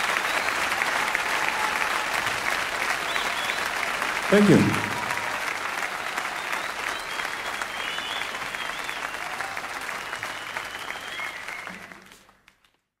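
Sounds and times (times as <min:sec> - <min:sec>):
audience applauding: 0:00.0 - 0:12.9
high whistles: 0:10.2 - 0:11.7.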